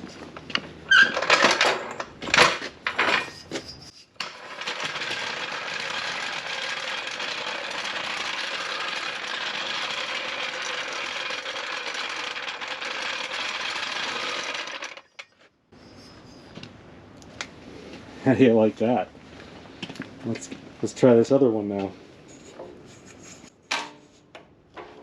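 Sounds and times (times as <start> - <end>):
floor jack wheels rattling: 0.9 - 15.4.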